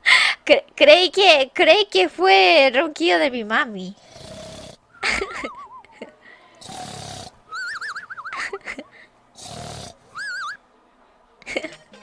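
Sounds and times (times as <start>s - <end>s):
person snoring with whistle: 4.0s - 6.0s, 6.6s - 8.5s, 9.4s - 10.6s.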